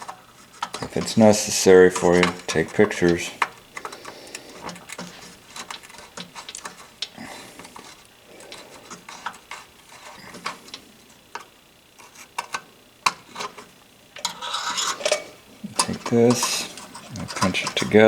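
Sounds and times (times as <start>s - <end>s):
screwdriver clicking on metal screws: 0.0s - 11.5s.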